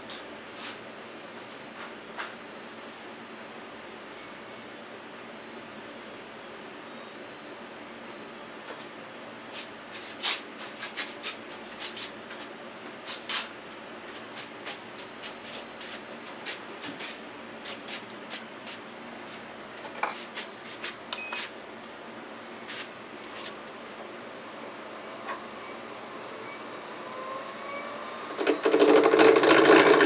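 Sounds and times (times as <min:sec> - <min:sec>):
steady low hum: 0:21.1 - 0:28.7
lathe motor whine: 0:22.0 - 0:30.0.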